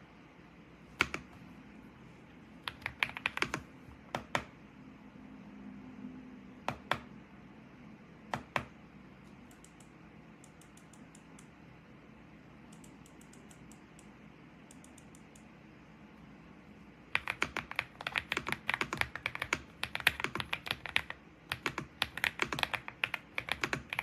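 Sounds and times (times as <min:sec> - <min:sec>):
mechanical keyboard keys clacking: 0:02.6 - 0:04.5, 0:17.2 - 0:24.0.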